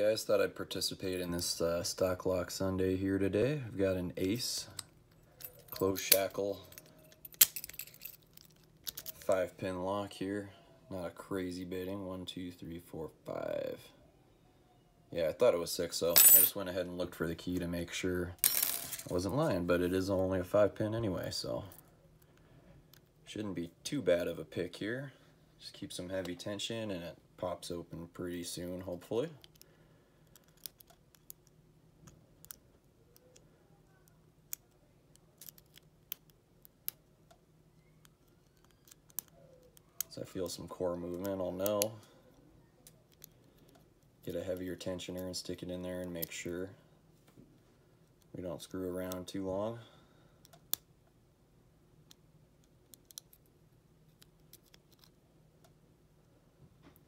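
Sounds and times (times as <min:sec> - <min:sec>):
faint metallic lock picking clicks: 0:34.0 - 0:40.1, 0:54.2 - 0:55.1.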